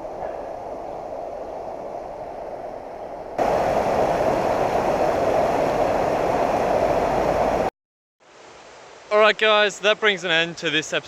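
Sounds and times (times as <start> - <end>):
rushing mountain stream: 3.4 - 11.0.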